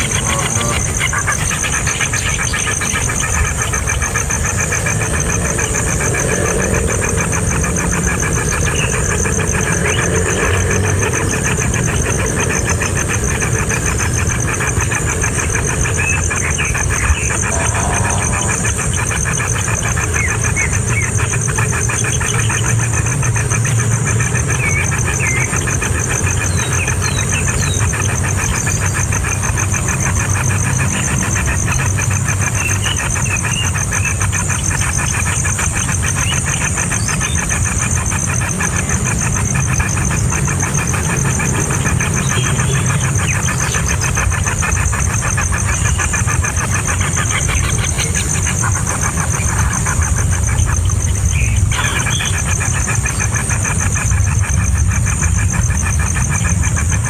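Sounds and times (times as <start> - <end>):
low motor rumble: 0.0 - 31.6
nestling birds cheeping: 0.0 - 57.0.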